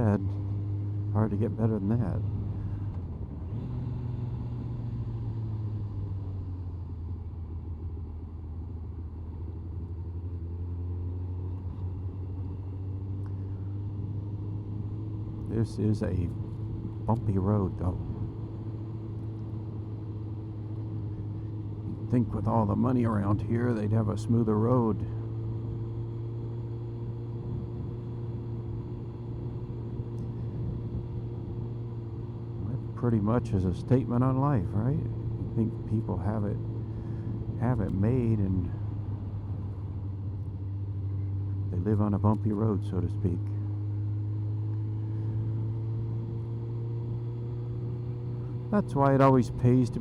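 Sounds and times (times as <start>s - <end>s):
motorcycle engine cruising: 0.0s - 50.0s
road and wind noise: 0.0s - 50.0s.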